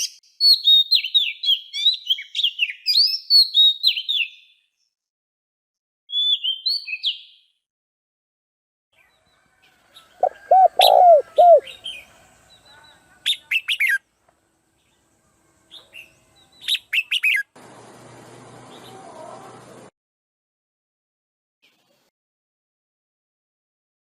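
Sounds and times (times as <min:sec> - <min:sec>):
birds calling: 0:10.0 - 0:14.0.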